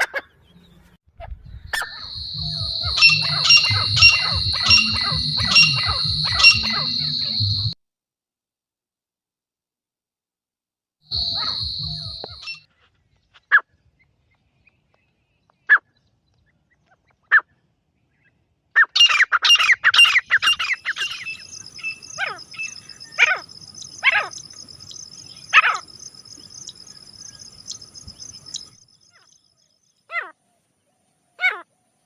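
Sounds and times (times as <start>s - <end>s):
bird calling sharply: 1.8s - 7.8s, 11.1s - 12.6s
high-pitched buzz: 1.9s - 7.8s, 11.1s - 12.6s.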